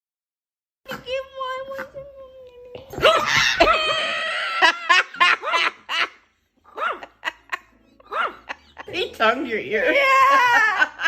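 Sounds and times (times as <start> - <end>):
person laughing hard: 3.0 - 8.9, 10.0 - 11.0.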